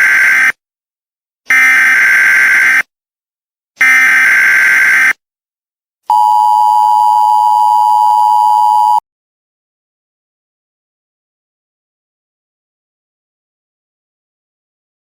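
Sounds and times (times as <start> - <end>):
two-tone attention signal: 6.1 - 9.0.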